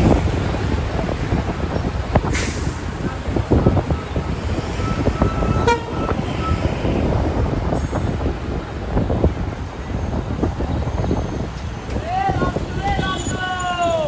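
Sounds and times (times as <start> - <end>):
motorbike road rumble: 0.0 - 14.0
wind: 0.0 - 14.0
vehicle horn: 3.7 - 6.6.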